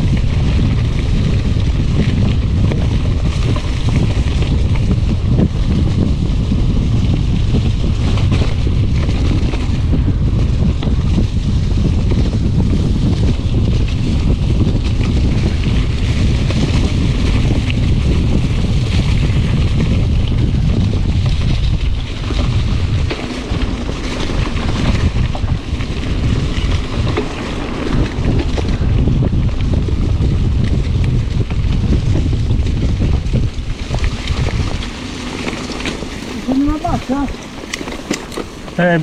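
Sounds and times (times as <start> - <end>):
bike clicks and rattles: 0.0 - 39.0
wind buffeting microphone: 0.0 - 39.0.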